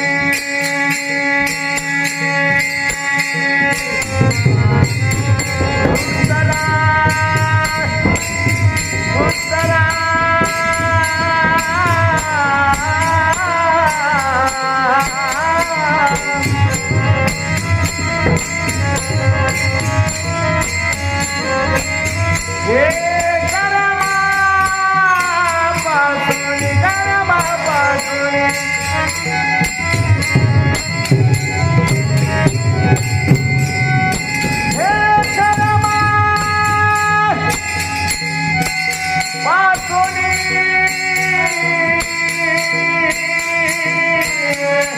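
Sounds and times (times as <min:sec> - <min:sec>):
jingling percussion: 0:00.0 - 0:44.9
person singing devotional song: 0:00.0 - 0:44.9
drum beating: 0:03.8 - 0:11.8, 0:29.7 - 0:36.9.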